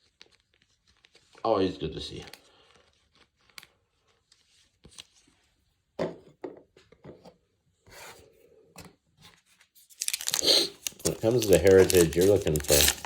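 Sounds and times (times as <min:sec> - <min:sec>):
cards scraping against each other: 0:09.9 - 0:13.0.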